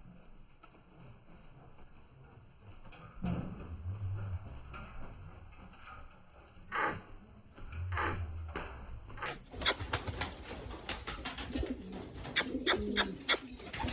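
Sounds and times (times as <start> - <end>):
pigeons cooing: 9.6 - 13.9
sharp clicks and taps: 12.2 - 13.5.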